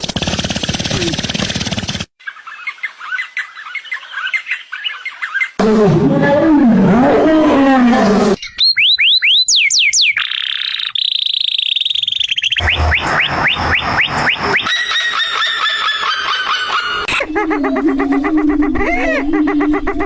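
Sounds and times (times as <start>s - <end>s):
falling whistled chirps: 8.4s - 17.3s
fast chirping trills: 8.4s - 17.8s
steady high whistle: 12.6s - 16.0s.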